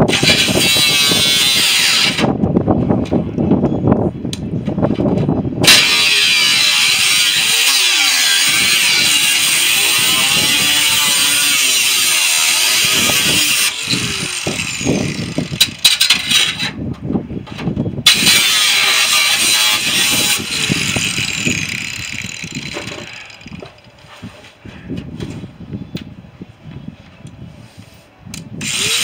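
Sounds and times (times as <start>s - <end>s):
power tool running: 0.0s - 2.3s, 5.6s - 16.8s, 18.1s - 23.7s, 28.6s - 29.0s.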